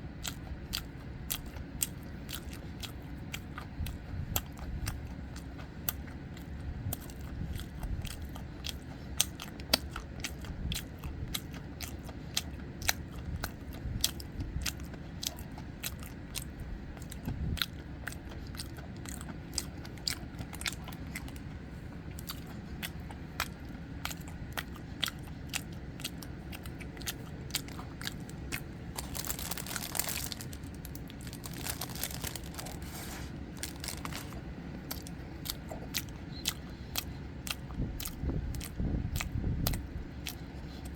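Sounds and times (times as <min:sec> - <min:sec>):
chewing and biting bread: 0:00.0 - 0:40.9.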